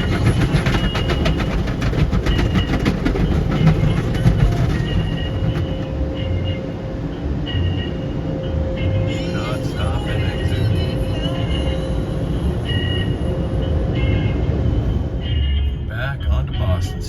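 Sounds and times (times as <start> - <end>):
car wash clatter: 0.0 - 6.6.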